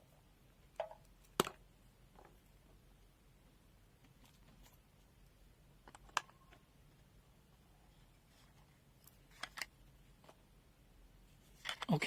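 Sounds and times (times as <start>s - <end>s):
batteries clicking into compartment: 9.1s - 9.8s, 11.6s - 11.9s.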